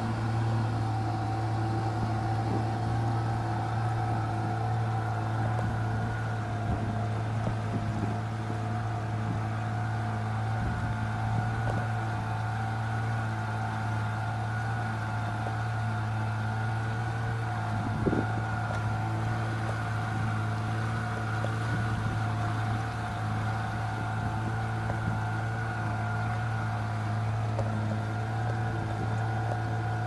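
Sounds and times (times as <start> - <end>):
boat engine running: 0.0 - 30.0.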